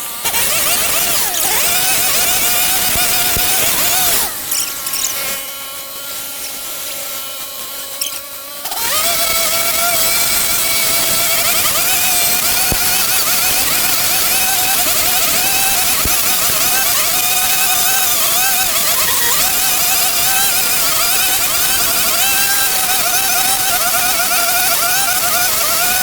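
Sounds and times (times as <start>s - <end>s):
petrol garden tool engine revving: 0.2s - 6.6s.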